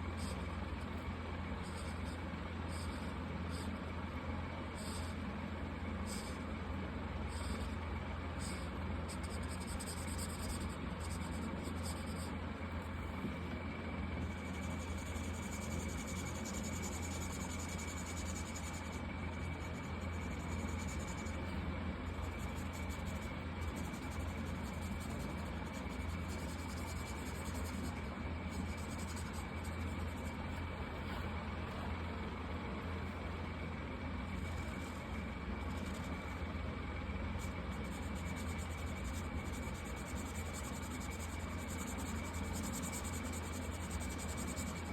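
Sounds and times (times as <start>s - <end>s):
steady low hum: 0.0s - 44.9s
marker rubbing on paper: 8.4s - 12.3s, 14.4s - 21.5s, 22.2s - 31.2s, 37.4s - 44.9s.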